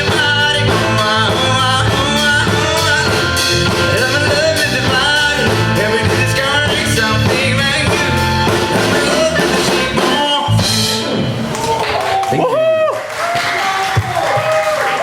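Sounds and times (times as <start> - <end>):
person singing: 0.0 - 11.0
live pop band playing: 0.0 - 12.6.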